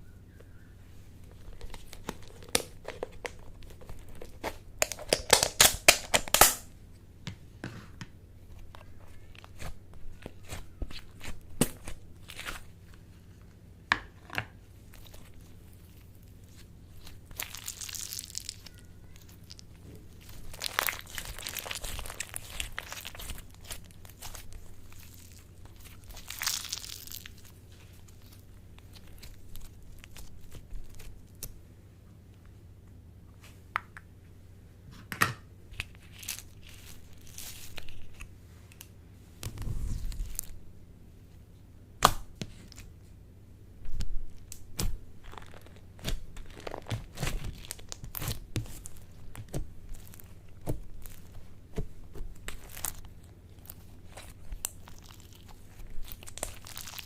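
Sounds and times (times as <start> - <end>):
slime crackling when squeezed: 17.0 - 31.5, 44.4 - 51.4, 52.4 - 57.0.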